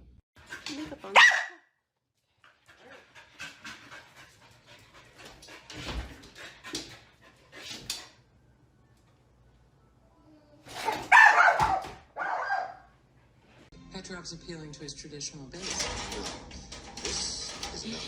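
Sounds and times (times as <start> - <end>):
dog panting: 2.4 - 8.2.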